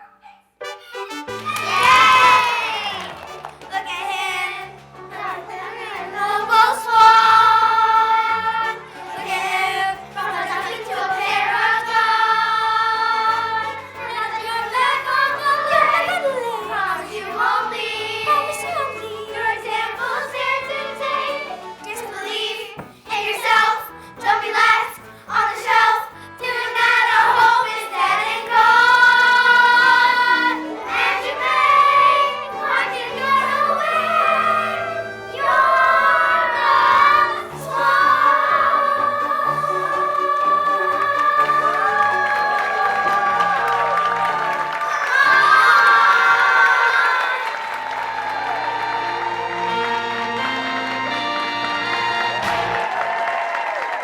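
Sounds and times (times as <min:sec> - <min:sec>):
instrumental accompaniment: 0:00.6 - 0:16.0, 0:26.9 - 0:46.2, 0:48.1 - 0:52.9
young voices singing in chorus: 0:03.7 - 0:49.8.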